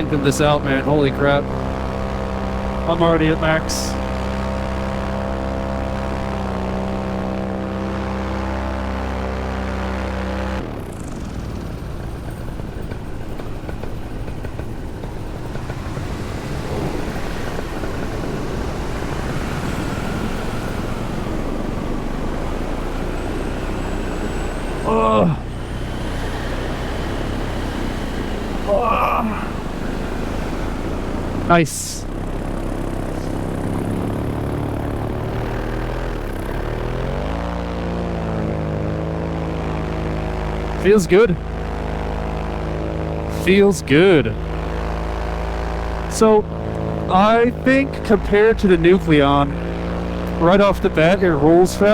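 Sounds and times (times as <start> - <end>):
two-stroke engine and propeller: 0.0 - 51.9
rough wind rush: 10.7 - 37.1.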